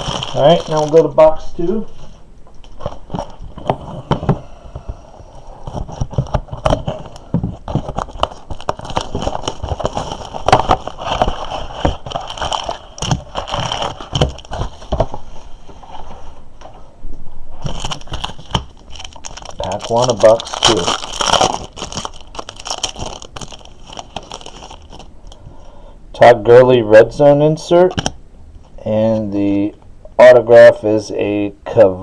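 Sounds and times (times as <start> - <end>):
packaging crinkling and clicking: 0.0 - 1.3, 5.6 - 15.2, 17.6 - 25.4.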